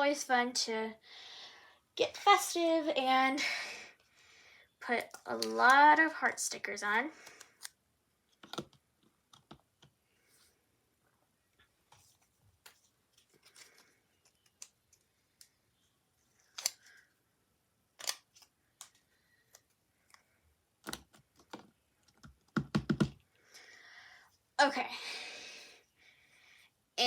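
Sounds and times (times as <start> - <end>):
stickers peeling and rustling: 11.9 - 15.6.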